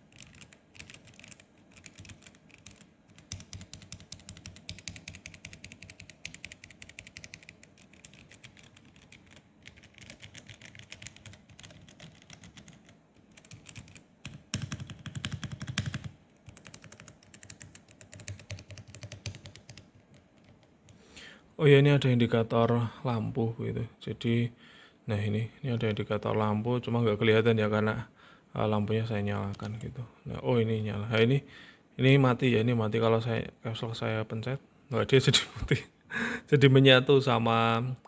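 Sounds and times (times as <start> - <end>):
mechanical keyboard typing: 0.1 - 20.7.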